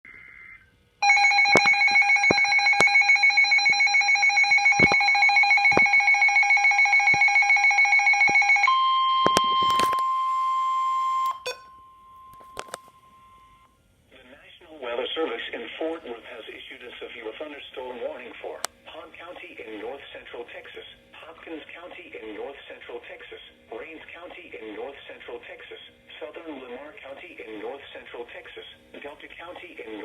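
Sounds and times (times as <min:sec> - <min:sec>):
pulsing electronic alarm: 0:00.4 - 0:13.7
steady weather radio warning tone: 0:01.0 - 0:13.6.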